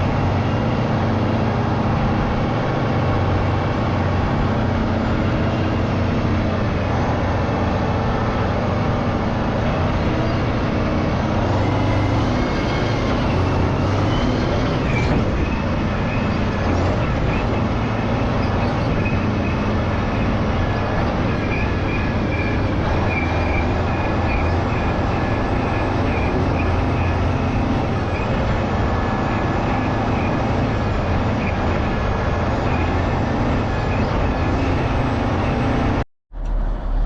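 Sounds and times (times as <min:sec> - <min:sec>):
diesel engines running under load: 0:00.0 - 0:37.0.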